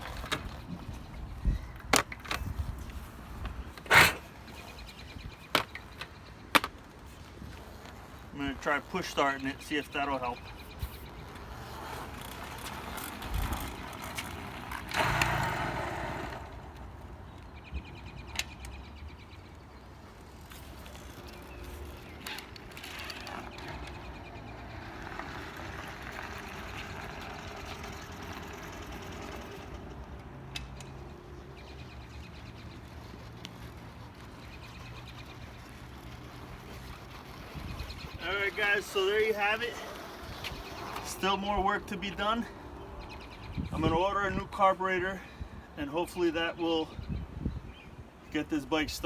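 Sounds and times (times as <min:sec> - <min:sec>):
motorbike rattling: 0:00.0 - 0:17.3, 0:20.2 - 0:43.9
tyres rolling: 0:00.0 - 0:17.3, 0:20.1 - 0:30.4, 0:32.2 - 0:42.5.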